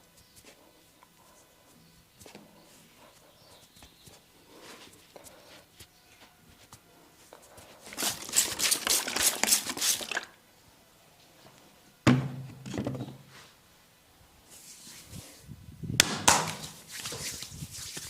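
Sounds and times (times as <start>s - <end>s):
heavy thump: 12.1s - 13.0s
hand slaps on skin: 16.0s - 16.8s.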